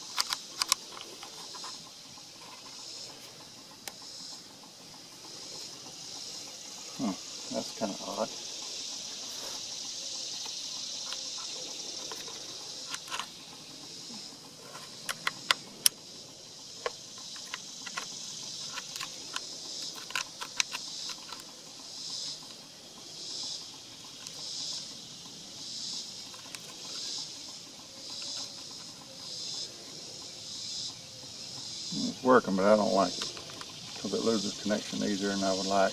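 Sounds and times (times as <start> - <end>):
sharp irregular clicks and taps: 0.0 - 6.5, 10.4 - 16.0, 16.7 - 22.6, 23.4 - 25.0, 25.9 - 29.7, 32.6 - 35.7
insects trilling: 0.0 - 35.9.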